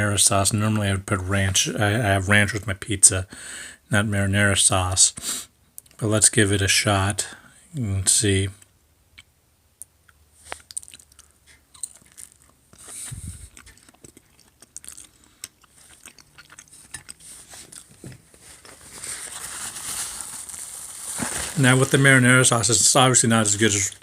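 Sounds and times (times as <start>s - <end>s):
person chewing food: 9.2s - 19.0s.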